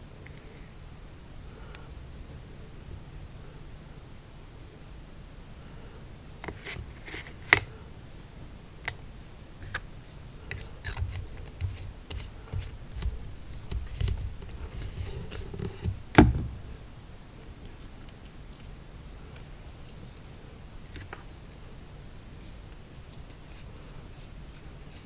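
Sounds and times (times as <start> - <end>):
paint bottles and tools clicking: 10.5 - 16.3
loud knock: 16.1 - 16.7.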